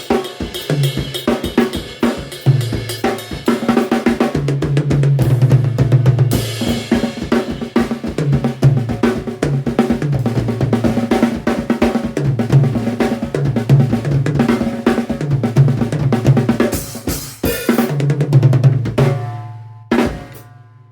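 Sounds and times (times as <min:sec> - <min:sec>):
drum kit groove and fills: 0:00.0 - 0:20.9.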